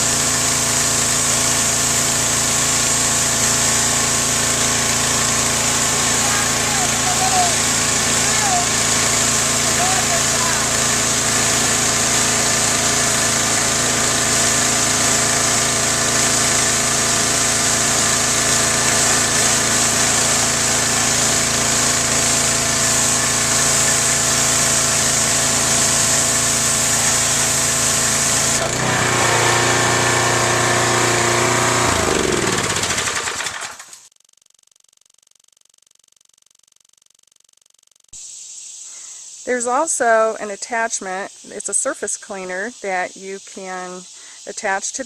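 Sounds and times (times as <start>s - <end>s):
water jet spraying hiss: 0.0s - 33.5s, 38.2s - 45.0s
pressure washer engine running: 0.0s - 33.9s.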